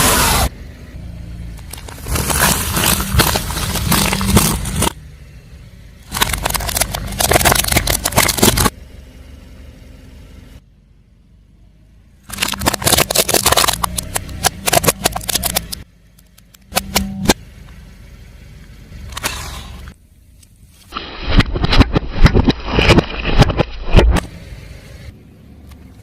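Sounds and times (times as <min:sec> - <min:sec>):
car engine running low: 0:00.0 - 0:26.0
tyre crushing crunchy objects: 0:01.6 - 0:05.0, 0:06.1 - 0:08.7, 0:12.3 - 0:15.8, 0:21.0 - 0:24.3.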